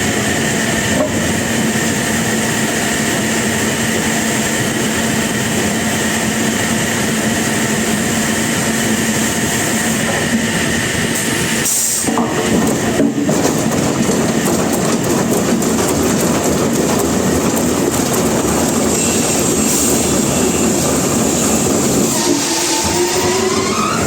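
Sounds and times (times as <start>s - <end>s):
sawmill saw cutting log: 21.9s - 24.0s.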